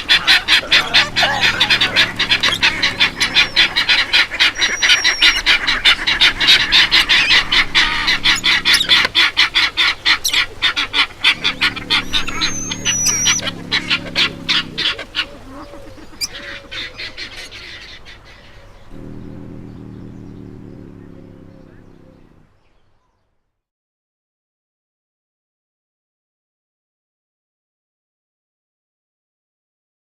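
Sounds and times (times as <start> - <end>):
flock of birds honking: 0.0 - 19.1.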